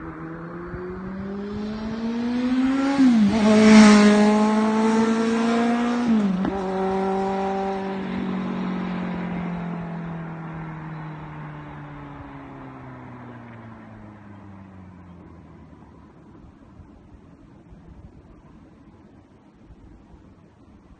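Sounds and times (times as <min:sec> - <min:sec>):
motorcycle accelerating past: 0:00.0 - 0:15.4.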